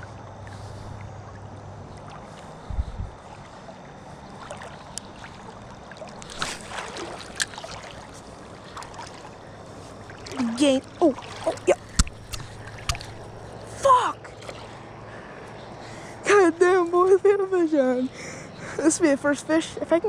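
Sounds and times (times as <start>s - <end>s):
river water running: 0.0s - 19.2s
clicks and splashes: 4.3s - 9.4s, 10.1s - 13.3s.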